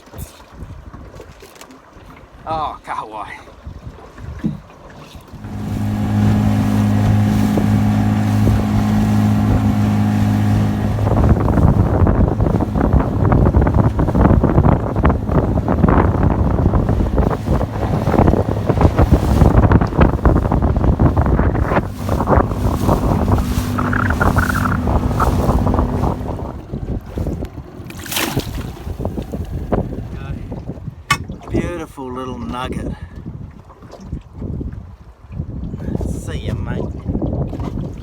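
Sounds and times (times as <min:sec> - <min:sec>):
water noise: 0:00.0 - 0:38.0
outboard motor humming: 0:03.5 - 0:32.0
gusty wind: 0:05.2 - 0:38.0.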